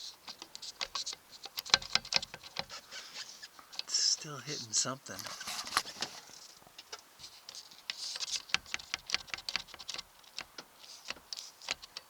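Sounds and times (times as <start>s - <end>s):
hands rustling: 0.0s - 8.5s.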